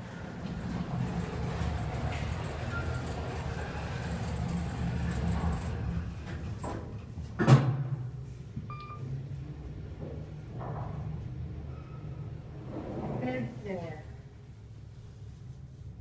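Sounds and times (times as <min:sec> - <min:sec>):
elevator hum: 0:00.0 - 0:07.4, 0:08.1 - 0:13.8
elevator doors thudding shut: 0:00.0 - 0:08.2.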